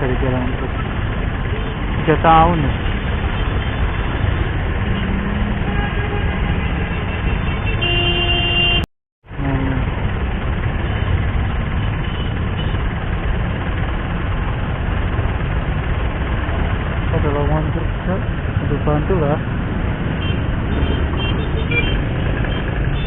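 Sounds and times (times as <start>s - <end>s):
traffic noise: 0.0s - 23.0s
motorcycle engine: 0.3s - 23.0s
vehicle horn: 4.9s - 8.9s, 20.2s - 23.0s.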